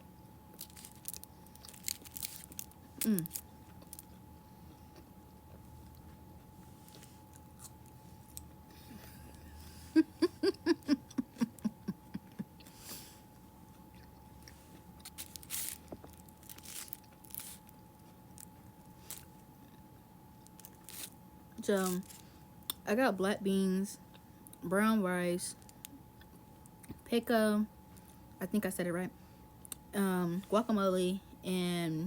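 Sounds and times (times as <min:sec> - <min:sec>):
faint high hum: 0:00.0 - 0:32.0
chewing and crunching food: 0:00.4 - 0:09.6, 0:12.4 - 0:22.8.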